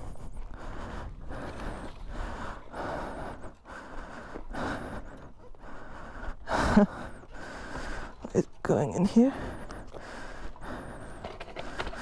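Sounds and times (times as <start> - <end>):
person breathing hard: 0.0 - 8.3, 9.3 - 12.0.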